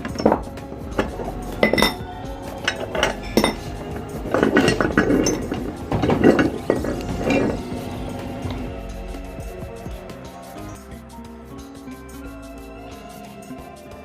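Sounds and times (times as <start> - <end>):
glass marbles clinking on metal: 0.0 - 8.6.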